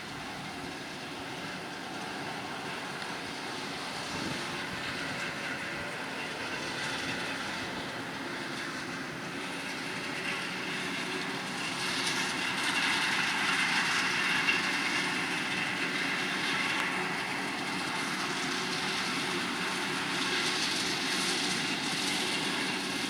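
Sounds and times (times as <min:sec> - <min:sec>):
harvest machinery humming whine: 0:00.0 - 0:23.0.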